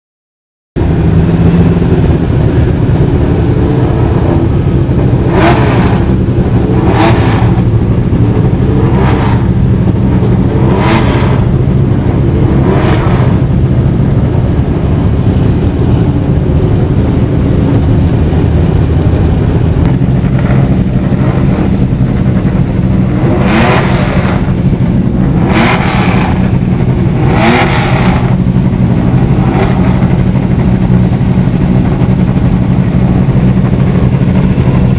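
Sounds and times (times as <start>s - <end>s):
racing car engines idling roughly: 0.8s - 34.9s
engine revving sharply: 3.4s - 13.6s, 16.8s - 30.6s.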